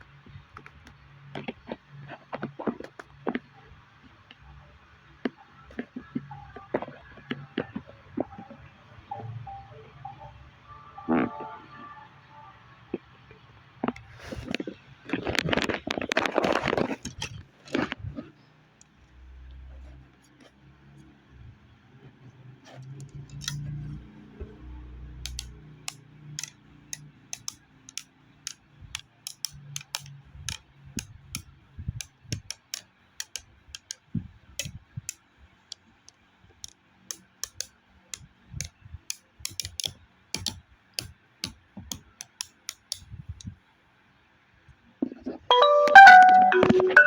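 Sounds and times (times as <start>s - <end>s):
light clicks and taps: 22.7s - 24.6s, 25.2s - 43.6s.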